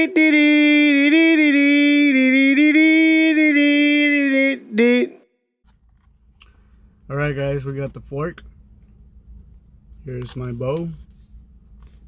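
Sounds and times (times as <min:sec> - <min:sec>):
voice singing a long held note: 0:00.0 - 0:05.3.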